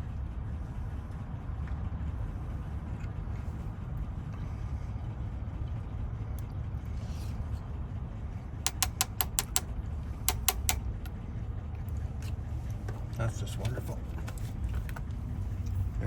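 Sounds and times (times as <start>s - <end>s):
low background rumble: 0.0s - 16.0s
metallic clicks of lock parts: 8.7s - 9.7s, 10.3s - 11.1s.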